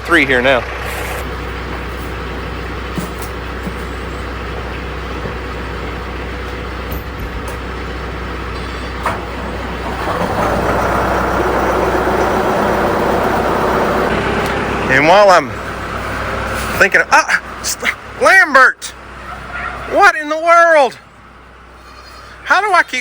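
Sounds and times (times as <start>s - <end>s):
vehicle engine revving: 9.0s - 15.0s.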